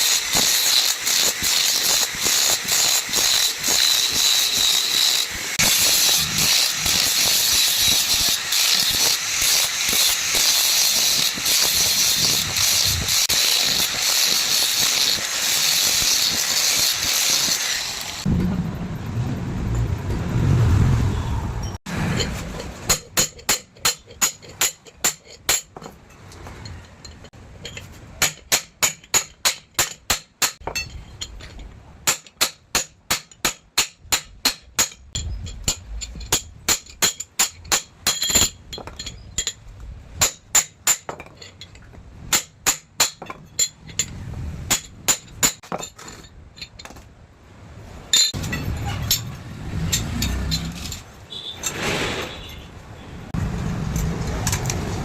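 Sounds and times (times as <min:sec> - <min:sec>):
hammer striking metal: 0:21.9 - 0:27.1, 0:32.0 - 0:39.6.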